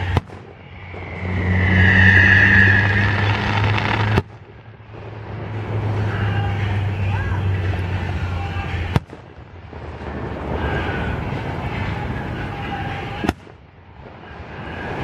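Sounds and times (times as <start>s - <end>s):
steady background noise: 0.0s - 15.0s
firework shells bursting: 2.4s - 4.5s.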